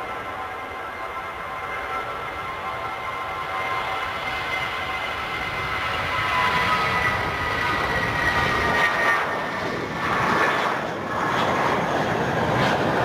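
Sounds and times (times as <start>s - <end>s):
jet airliner passing: 0.0s - 13.0s.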